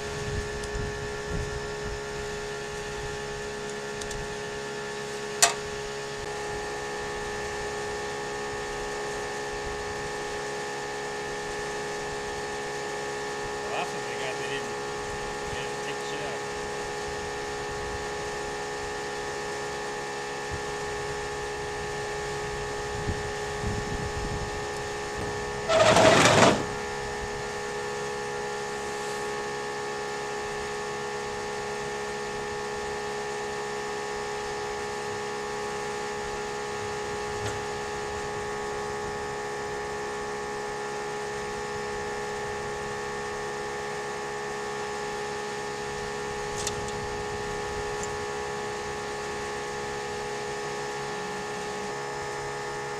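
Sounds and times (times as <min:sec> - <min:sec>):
steady machine hum: 0:00.0 - 0:52.9
loud burst of noise: 0:25.6 - 0:26.9.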